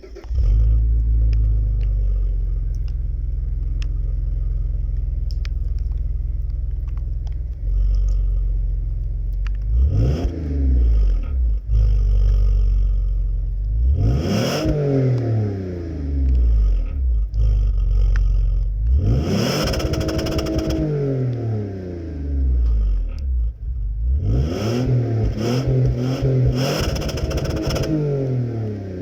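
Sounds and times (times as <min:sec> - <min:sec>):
car engine idling and revving: 0:00.0 - 0:29.0.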